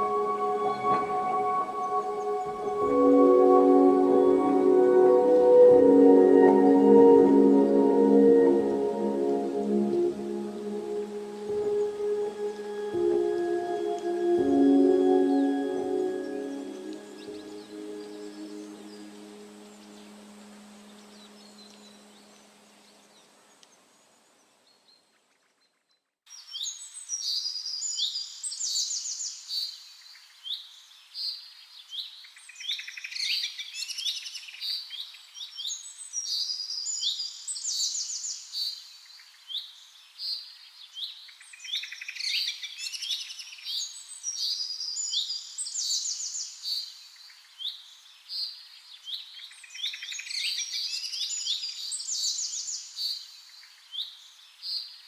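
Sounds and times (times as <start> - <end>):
low ringing tone: 0.0 - 7.8.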